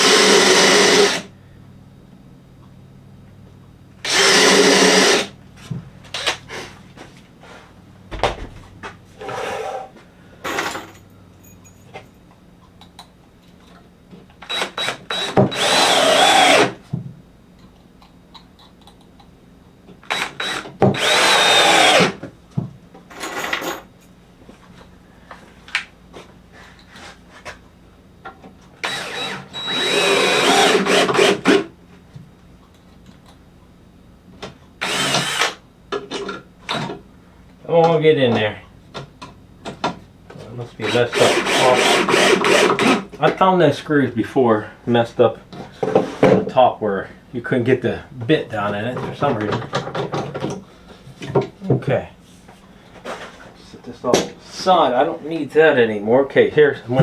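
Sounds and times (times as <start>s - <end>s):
power drill driving screws: 0.0s - 1.3s, 4.0s - 5.3s, 14.4s - 16.8s, 20.1s - 22.2s, 28.8s - 31.7s, 34.8s - 35.6s, 40.9s - 43.0s
knocks of handling wood: 8.1s - 9.0s.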